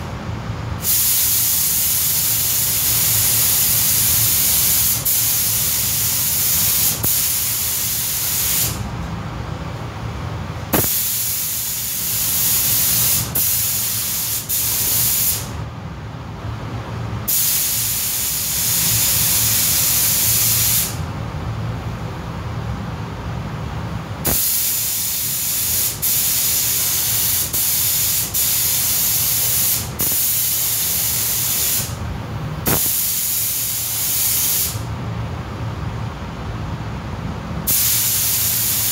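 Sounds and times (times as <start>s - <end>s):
steady low hum: 0.0s - 38.9s
spray gun hissing: 0.8s - 8.8s, 10.8s - 15.5s, 17.3s - 21.0s, 24.2s - 32.0s, 32.7s - 34.9s, 37.7s - 38.9s.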